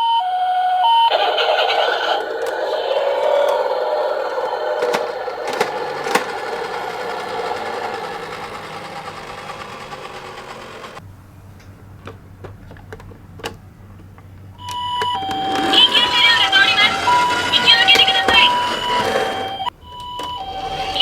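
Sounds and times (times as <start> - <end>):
scattered clicks: 1.1 - 11.0
toy car rattling and whirring: 1.1 - 11.0, 14.6 - 21.0.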